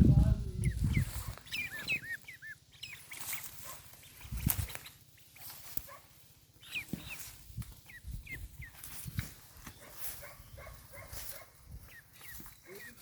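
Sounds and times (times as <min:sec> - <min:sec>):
high animal calls: 0:00.6 - 0:07.3.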